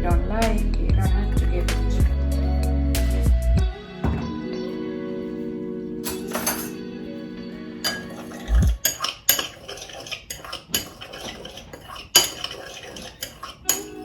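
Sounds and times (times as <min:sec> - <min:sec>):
background music: 0:00.0 - 0:09.4
metal utensil scraping a bowl: 0:01.2 - 0:02.2, 0:06.0 - 0:06.9, 0:07.8 - 0:14.0
low thump: 0:04.0 - 0:04.4.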